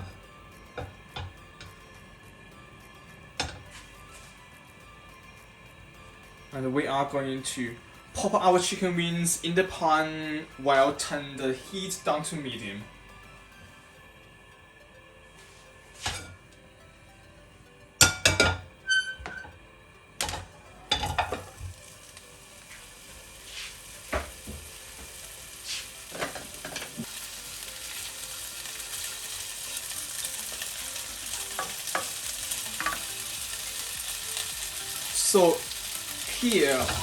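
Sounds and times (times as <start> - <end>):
sizzling in a pan: 0.0 - 2.2, 3.0 - 4.7, 15.4 - 16.5, 18.0 - 37.0
knocks and clinks against pan: 18.0 - 19.5, 20.2 - 21.6.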